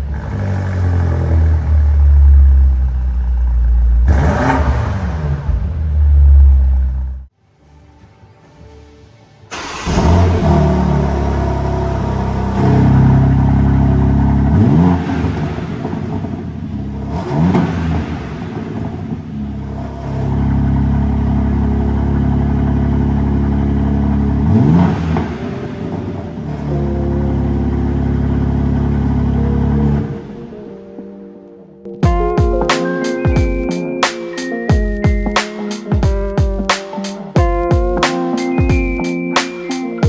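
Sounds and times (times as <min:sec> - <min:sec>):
car engine revving: 0:00.0 - 0:07.3, 0:09.5 - 0:30.8.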